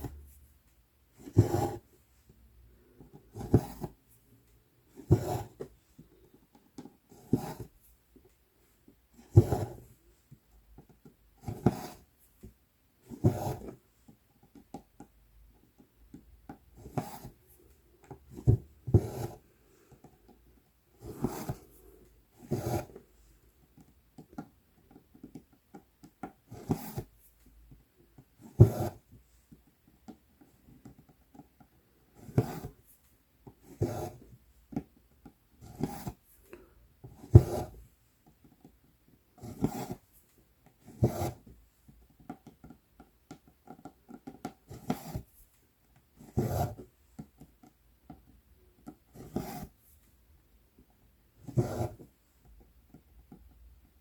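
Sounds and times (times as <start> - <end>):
thread rasping through cloth: 21.0 - 21.8, 51.4 - 52.1.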